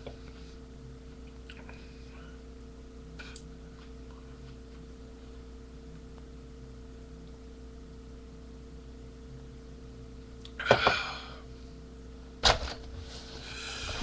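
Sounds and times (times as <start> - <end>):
steady electrical hum: 0.0 - 14.0
person breathing hard: 10.7 - 11.5, 13.2 - 14.0.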